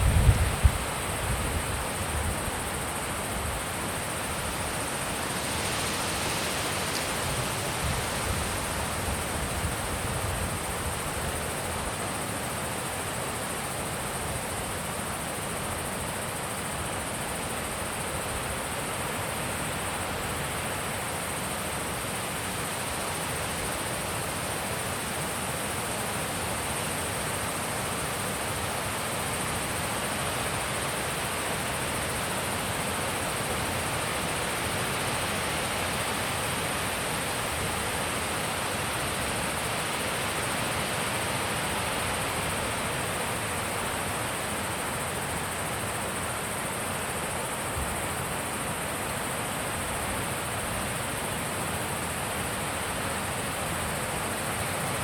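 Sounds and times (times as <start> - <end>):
wind blowing: 0.0 - 2.4.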